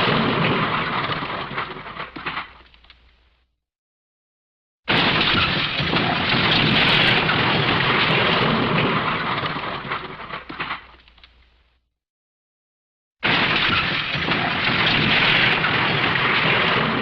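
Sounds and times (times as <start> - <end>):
loud noisy crash: 0.0 - 2.6, 4.9 - 10.8, 13.2 - 17.0.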